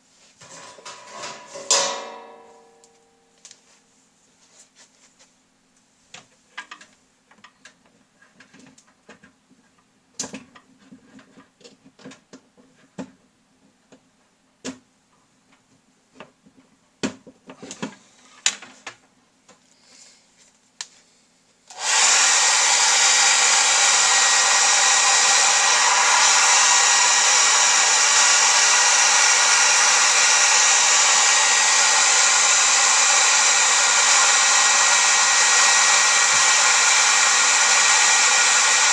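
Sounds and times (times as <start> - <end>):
hair dryer rushing: 21.7 - 38.9.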